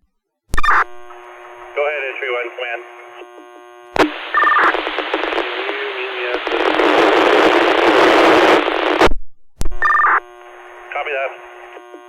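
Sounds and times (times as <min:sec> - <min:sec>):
radio click: 0:00.5 - 0:12.0
radio static hiss: 0:00.6 - 0:12.0
voice over radio: 0:01.7 - 0:03.4, 0:04.6 - 0:09.0, 0:10.8 - 0:12.0.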